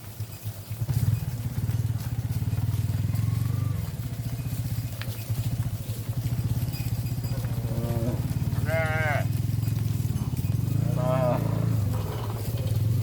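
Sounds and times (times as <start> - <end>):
small motorcycle engine running: 0.0 - 13.0.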